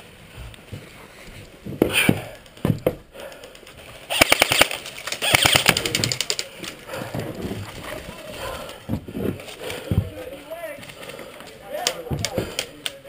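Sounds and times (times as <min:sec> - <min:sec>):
airsoft rifle firing bursts: 0:04.1 - 0:06.4.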